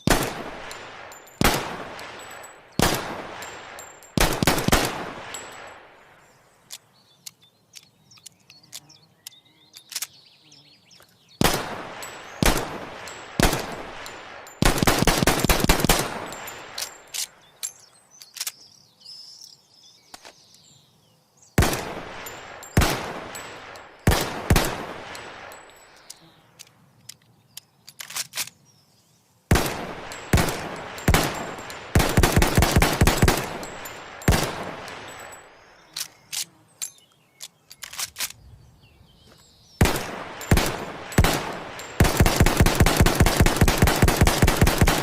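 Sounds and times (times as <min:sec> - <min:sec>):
pistol shots echoing: 0:00.0 - 0:06.1, 0:11.4 - 0:17.3, 0:21.6 - 0:26.0, 0:29.5 - 0:35.8, 0:39.8 - 0:45.0.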